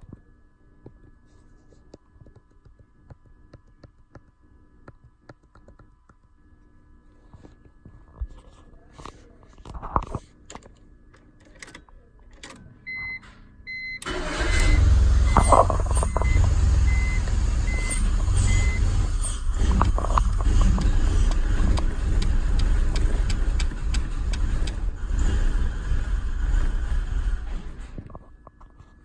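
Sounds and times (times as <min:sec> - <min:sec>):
car engine starting and idling: 0:14.0 - 0:28.0.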